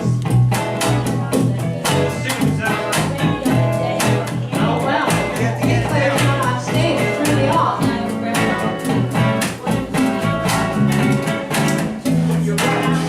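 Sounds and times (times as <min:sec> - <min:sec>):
guitar playing: 0:00.0 - 0:13.0
steady drum beat: 0:00.0 - 0:13.0
person singing: 0:01.1 - 0:09.1, 0:12.0 - 0:13.0.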